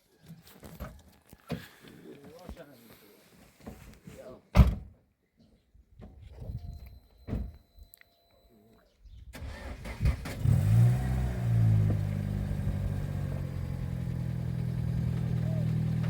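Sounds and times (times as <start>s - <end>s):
engine starting and idling: 9.3s - 16.0s.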